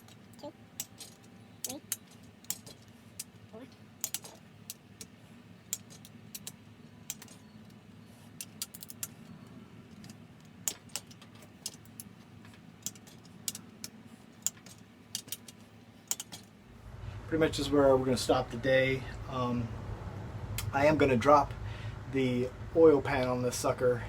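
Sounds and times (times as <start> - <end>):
steady low hum: 0.0 - 24.0
torque wrench clicking: 4.0 - 5.1.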